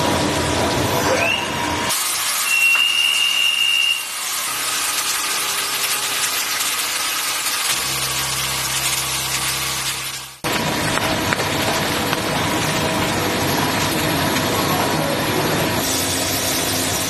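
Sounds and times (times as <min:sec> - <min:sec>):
low machine hum: 0:07.7 - 0:17.0
cnc machine cutting hiss: 0:15.2 - 0:17.0.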